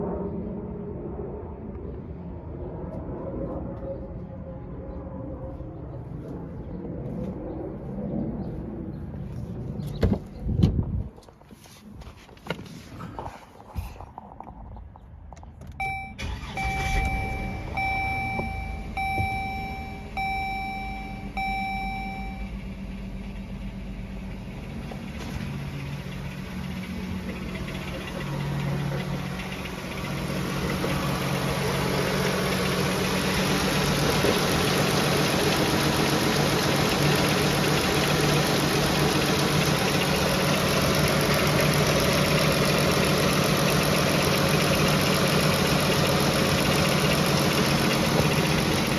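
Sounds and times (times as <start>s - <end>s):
car engine starting: 8.4s - 48.9s
dashboard chime beeping: 15.8s - 22.5s.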